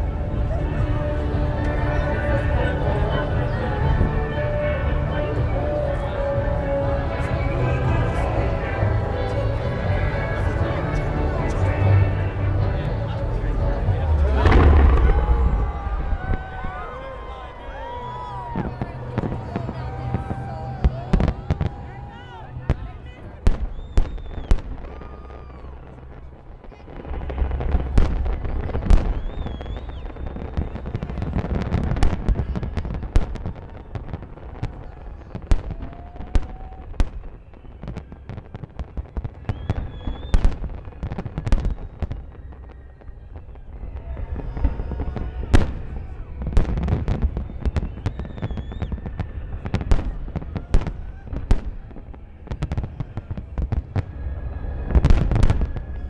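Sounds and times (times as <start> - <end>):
firework crackles: 0.0 - 56.0
low rumble of booms: 11.6 - 21.8.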